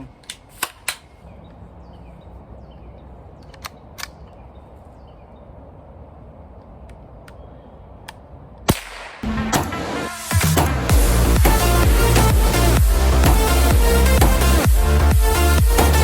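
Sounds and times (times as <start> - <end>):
sharp clicks: 3.4 - 4.4.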